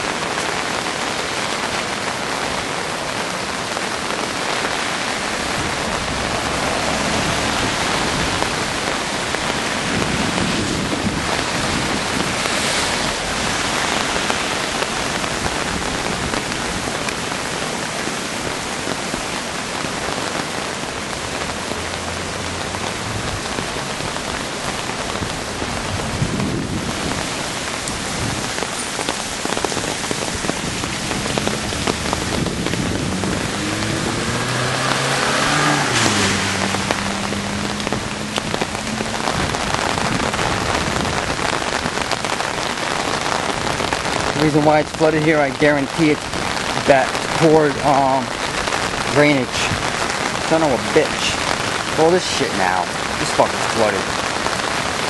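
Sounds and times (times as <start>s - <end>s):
heavy rain on street: 0.0s - 55.0s
vehicle engine: 4.7s - 16.2s, 20.6s - 26.2s, 30.6s - 41.6s.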